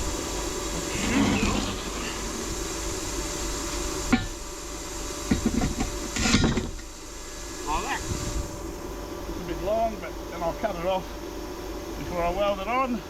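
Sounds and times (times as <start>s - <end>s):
air compressor running: 0.0s - 8.8s.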